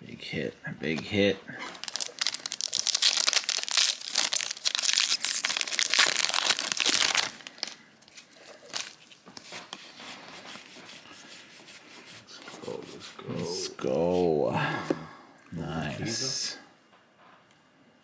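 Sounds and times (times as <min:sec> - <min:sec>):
plastic wrapper crinkling: 0:00.9 - 0:09.8
cards rustling and handling: 0:01.8 - 0:10.8.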